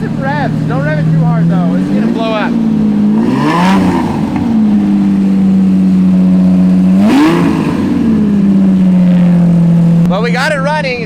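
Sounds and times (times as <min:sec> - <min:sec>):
engine revving: 0:00.0 - 0:11.0
sports car engine idling: 0:00.0 - 0:11.0.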